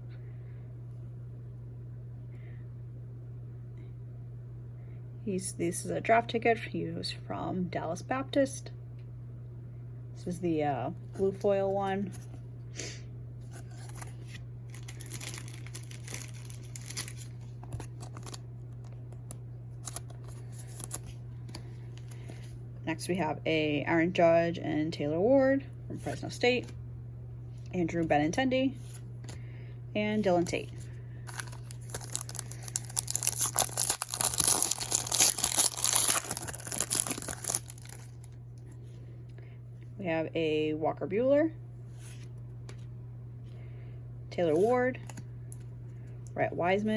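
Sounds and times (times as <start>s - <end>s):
wrapper crinkling: 13.5s - 19.0s, 19.8s - 21.2s, 30.7s - 38.4s
cards being handled: 13.5s - 22.5s, 30.2s - 38.3s
foil pack tearing: 13.6s - 18.4s, 31.3s - 38.3s.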